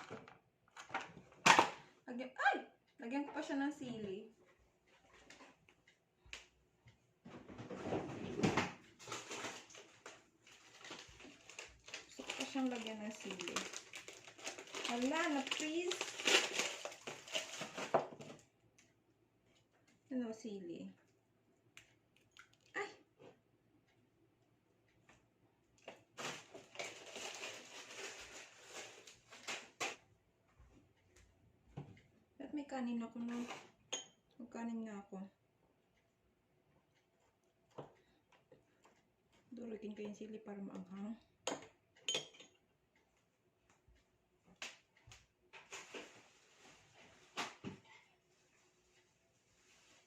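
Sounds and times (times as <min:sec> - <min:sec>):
food packaging rustling and crinkling: 0:07.7 - 0:18.5, 0:25.8 - 0:30.1, 0:45.6 - 0:47.7, 0:48.3 - 0:50.0
rustling: 0:26.2 - 0:29.9.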